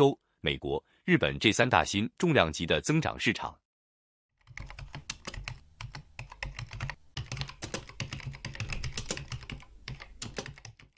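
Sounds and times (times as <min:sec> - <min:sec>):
rapid keyboard typing: 0:04.4 - 0:10.9.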